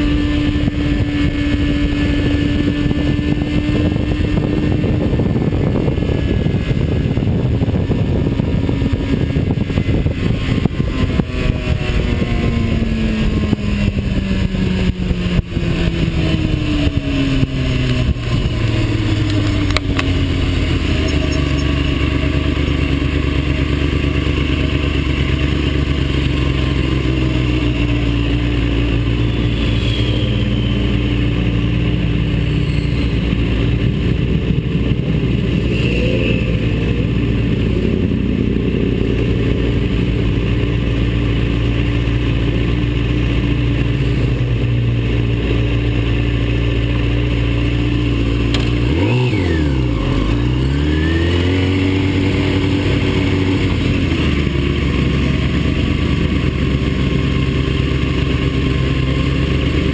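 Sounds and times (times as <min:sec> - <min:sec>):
heavy wind rush: 0:00.0 - 0:23.5, 0:31.6 - 0:41.5
vehicle engine at speed: 0:00.0 - 0:59.9.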